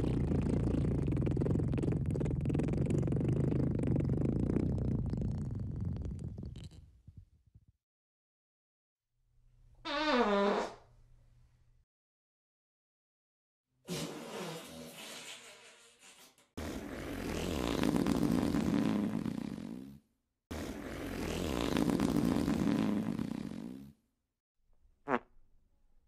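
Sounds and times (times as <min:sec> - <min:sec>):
fart sounds: 0:00.0 - 0:07.2, 0:09.8 - 0:10.8, 0:13.9 - 0:15.7, 0:16.6 - 0:24.0, 0:25.0 - 0:25.4.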